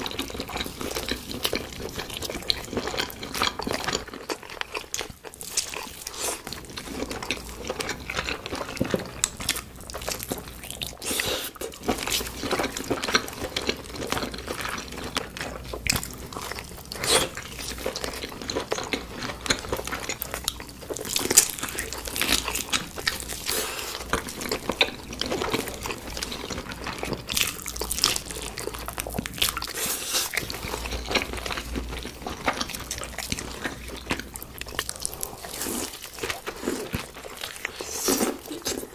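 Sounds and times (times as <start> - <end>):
crunchy chewing: 0.0 - 38.9
wet mouth sounds: 16.9 - 17.8.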